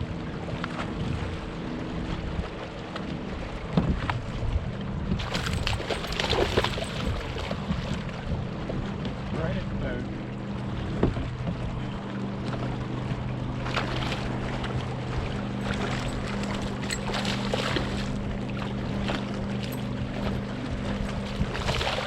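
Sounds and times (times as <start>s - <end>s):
boat motor humming: 0.0s - 22.0s
water noise: 0.0s - 22.0s
short water splashes: 0.2s - 22.0s.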